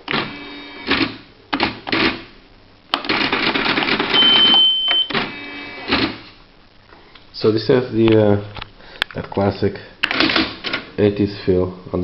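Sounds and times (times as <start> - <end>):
electronic typewriter mechanism: 0.1 - 2.3, 3.0 - 6.3, 10.0 - 10.8
high electronic beep: 4.2 - 5.2.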